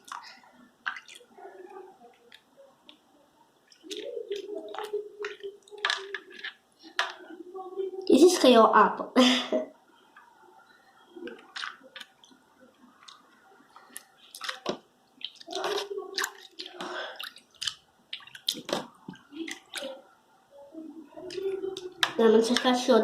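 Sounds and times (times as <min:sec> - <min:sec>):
hand squelching watery slime: 0:00.0 - 0:01.6, 0:03.7 - 0:07.2, 0:11.3 - 0:12.4, 0:13.8 - 0:20.0.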